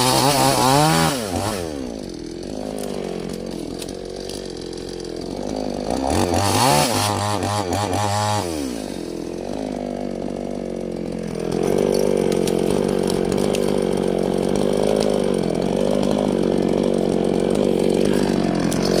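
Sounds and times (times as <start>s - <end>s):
chainsaw cutting wood: 0.0s - 19.0s.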